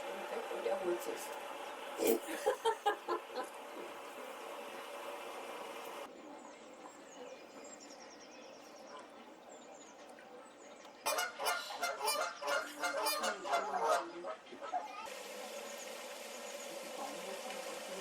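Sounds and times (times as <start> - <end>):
small birds chirping: 6.0 - 13.0
goose honking: 11.1 - 15.1.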